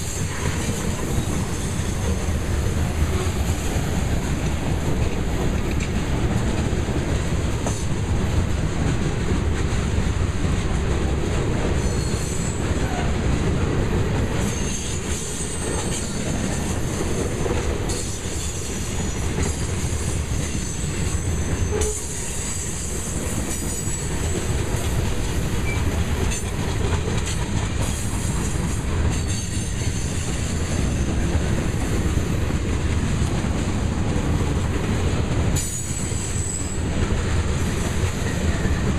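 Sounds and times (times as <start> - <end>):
clacking over rail joints: 0.0 - 38.9
train wheels rumbling on rail: 0.0 - 38.9
high wheel squeal: 11.8 - 13.2, 17.9 - 24.3, 35.6 - 36.9.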